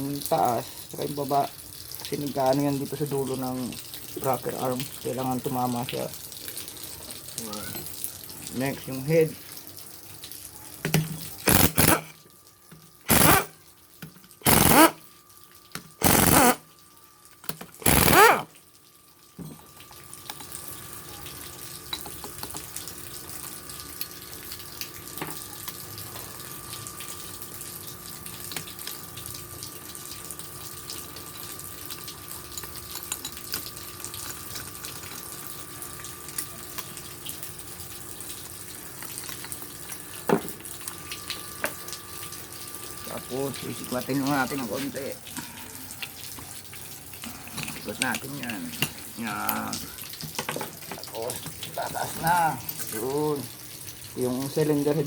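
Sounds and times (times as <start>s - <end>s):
power tool bursts: 11.4s - 12.1s, 13.1s - 13.6s, 14.4s - 15.0s, 16.0s - 16.7s, 17.8s - 18.5s.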